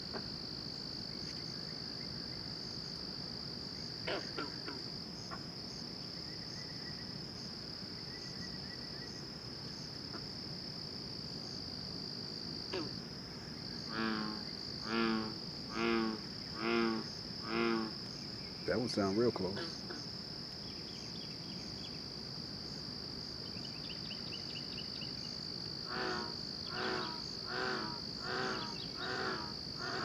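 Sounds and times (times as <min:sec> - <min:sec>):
cricket trill: 0:00.0 - 0:30.0
loud pulsed frog calls: 0:12.6 - 0:13.0, 0:13.7 - 0:18.2, 0:25.8 - 0:30.0.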